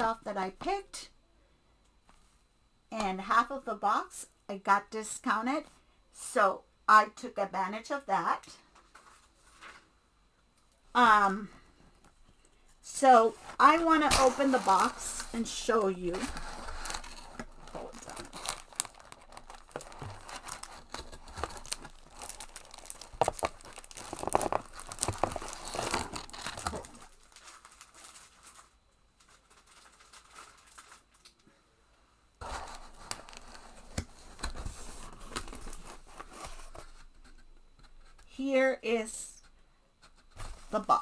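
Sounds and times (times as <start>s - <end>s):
packing material rustling: 13.1s - 31.4s, 32.4s - 37.4s
tape tearing: 13.5s - 28.4s.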